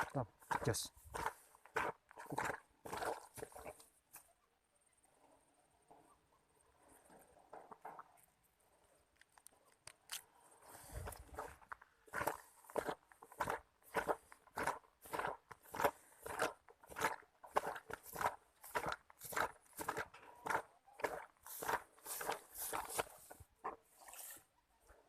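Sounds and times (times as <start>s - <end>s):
footsteps in dry undergrowth: 0.0s - 4.3s, 10.6s - 24.5s.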